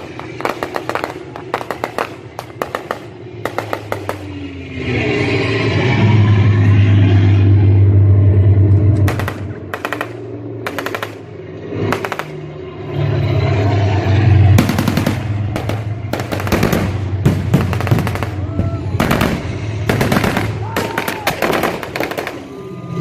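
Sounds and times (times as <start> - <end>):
low hum: 0.0 - 23.0.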